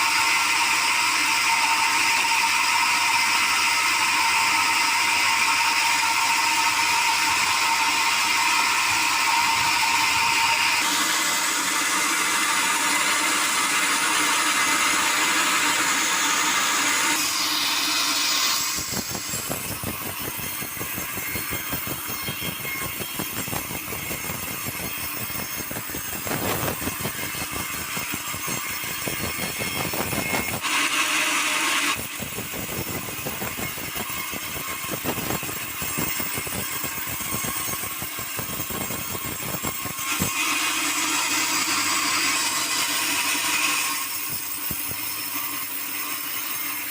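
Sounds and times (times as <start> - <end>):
saw whining through log: 0.0 - 46.9.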